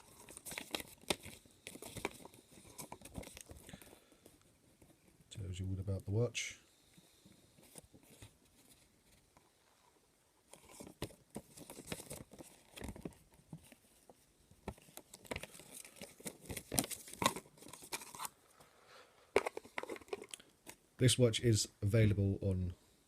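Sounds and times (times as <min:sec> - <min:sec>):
packaging crinkling and rustling: 0:00.0 - 0:04.2, 0:10.5 - 0:18.5, 0:19.3 - 0:20.8.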